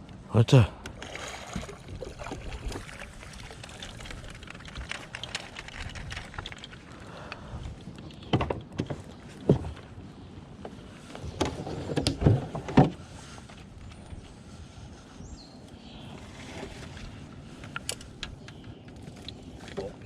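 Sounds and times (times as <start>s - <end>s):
knocks and thumps in a boat: 7.6s - 13.2s.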